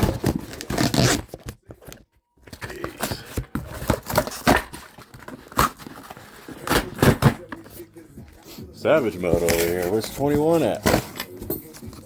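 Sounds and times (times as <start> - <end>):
cardboard ripping and crunching: 0.0 - 2.0, 2.6 - 7.5.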